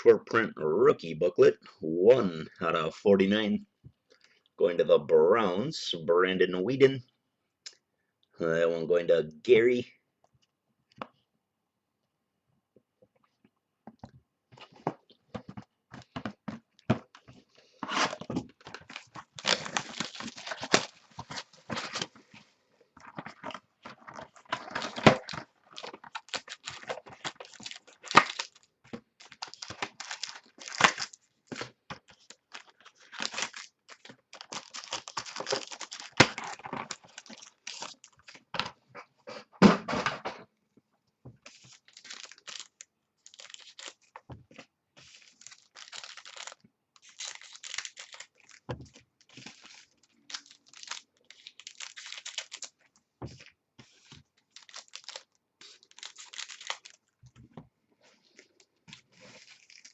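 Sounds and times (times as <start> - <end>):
wrappers tearing and crinkling: 17.9 - 22.1, 23.4 - 31.2, 32.1 - 38.4, 41.5 - 44.2, 45.0 - 52.8, 53.4 - 57.1, 58.2 - 59.9.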